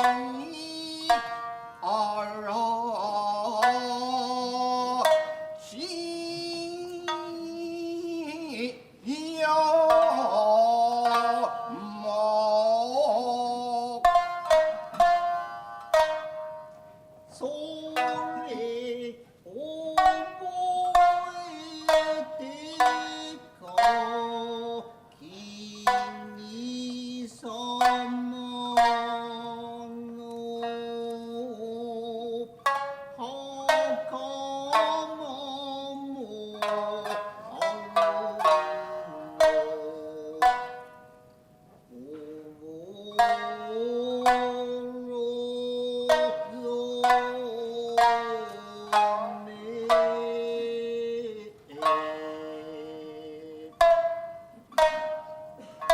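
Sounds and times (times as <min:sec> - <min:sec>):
plucked shamisen strokes: 0:00.0 - 0:55.9
chanter singing held notes: 0:17.3 - 0:41.1, 0:41.9 - 0:55.9.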